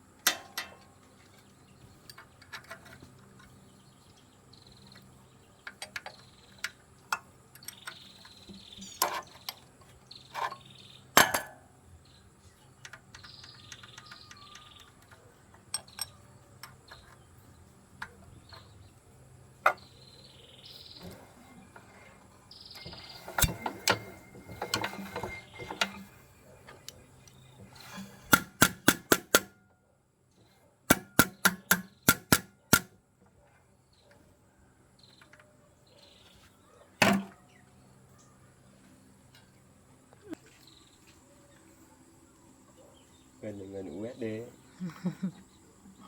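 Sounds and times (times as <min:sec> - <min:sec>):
tools and metal parts clinking: 0:00.2 - 0:03.6, 0:12.8 - 0:18.8, 0:21.0 - 0:29.2.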